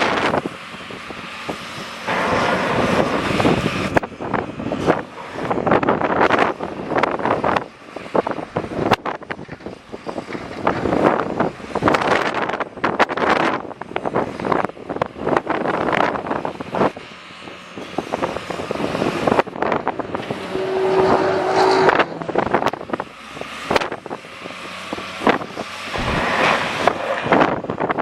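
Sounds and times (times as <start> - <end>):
diesel engine working: 0.0 - 28.0
wind buffeting microphone: 0.0 - 28.0
short steady tone: 20.3 - 22.7.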